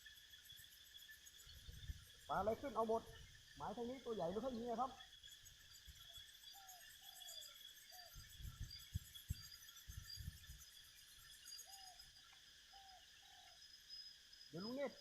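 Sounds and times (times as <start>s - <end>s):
crickets chirping: 0.0s - 15.0s.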